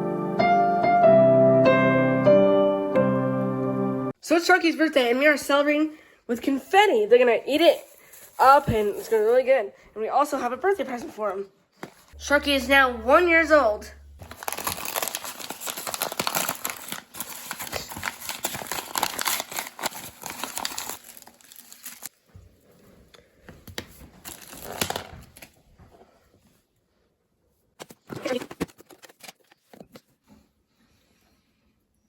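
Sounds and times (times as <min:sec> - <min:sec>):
paper crinkling and tearing: 0:14.2 - 0:22.1, 0:23.9 - 0:25.6, 0:27.8 - 0:30.0.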